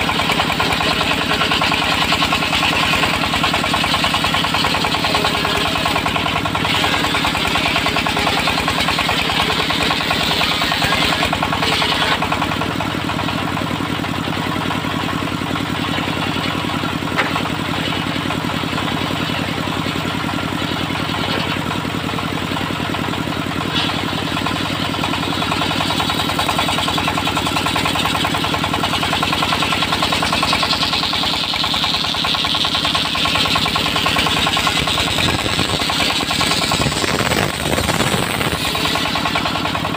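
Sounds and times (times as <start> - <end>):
sawing machine engine running: 0.0 - 39.9
high-pitched cutting noise: 33.4 - 39.9.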